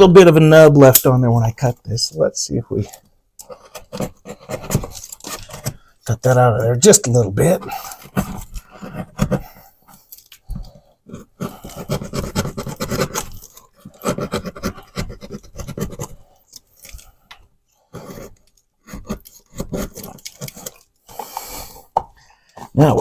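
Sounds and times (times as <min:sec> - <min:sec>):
blade scraping through drywall: 0:03.4 - 0:05.9, 0:11.1 - 0:17.2, 0:17.8 - 0:21.5.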